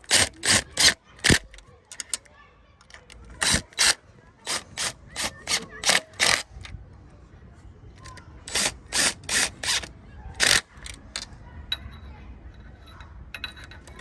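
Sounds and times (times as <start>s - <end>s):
hand ratchet clicking: 0.0s - 2.3s, 2.9s - 6.7s, 8.0s - 11.3s.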